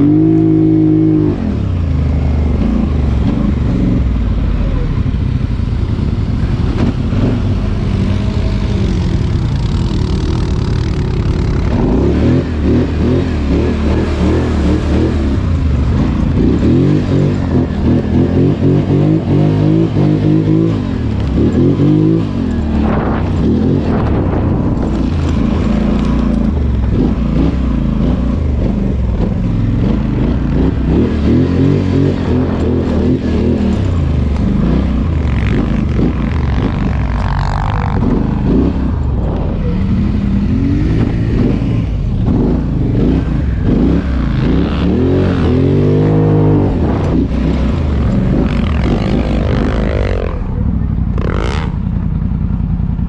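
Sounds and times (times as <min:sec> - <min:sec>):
atv engine revving: 0:00.0 - 0:53.0.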